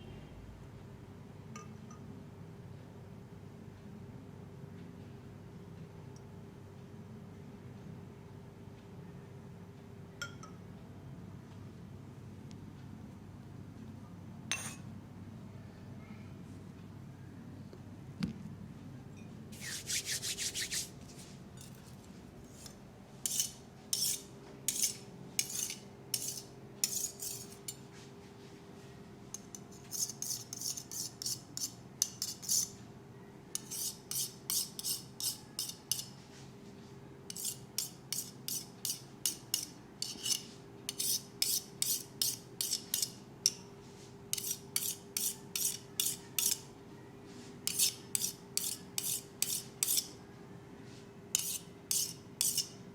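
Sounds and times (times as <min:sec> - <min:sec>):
faint steady hum: 0:00.0 - 0:52.9
hands rubbing hair and scalp: 0:19.6 - 0:21.3.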